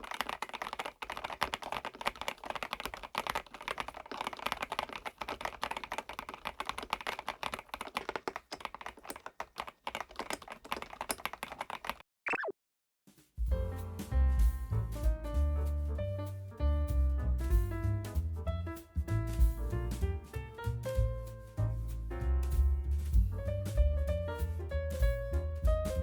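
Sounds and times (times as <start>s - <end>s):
fast mechanical keyboard typing: 0.0s - 12.0s.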